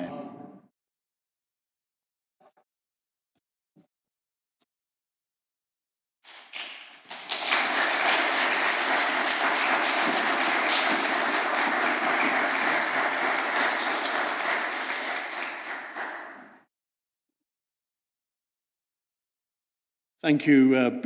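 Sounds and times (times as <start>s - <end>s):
audience applauding: 6.3s - 16.6s.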